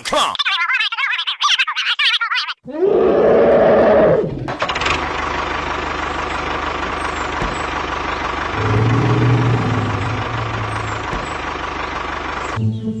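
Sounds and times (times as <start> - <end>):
small engine running: 4.5 - 12.7
deeper engine tone: 4.5 - 13.0.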